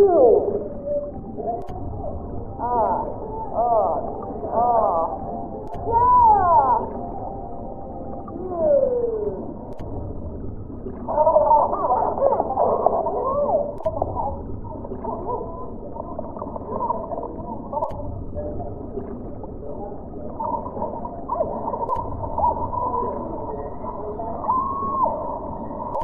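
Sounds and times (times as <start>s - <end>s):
faint clicks: 1.6s - 1.9s, 5.4s - 5.9s, 9.6s - 10.1s, 13.6s - 24.0s, 25.8s - 26.0s.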